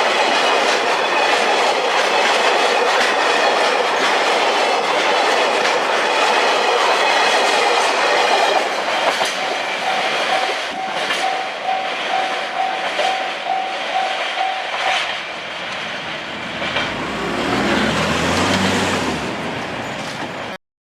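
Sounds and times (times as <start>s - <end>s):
train wheels clicking on rail joints: 0.0s - 20.6s
level crossing alarm bell: 9.4s - 15.0s.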